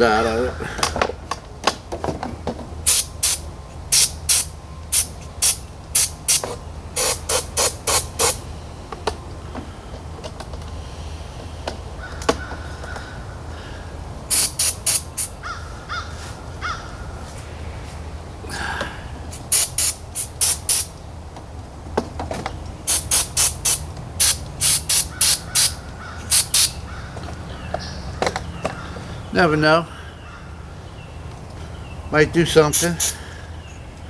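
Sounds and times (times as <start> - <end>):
aerosol spray bursts: 2.8 - 8.4, 14.3 - 15.3, 19.3 - 20.9, 22.9 - 26.8, 32.7 - 33.2.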